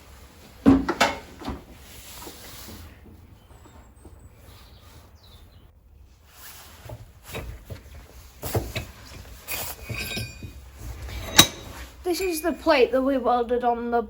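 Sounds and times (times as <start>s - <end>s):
metal clinks and knocks: 8.4s - 12.7s.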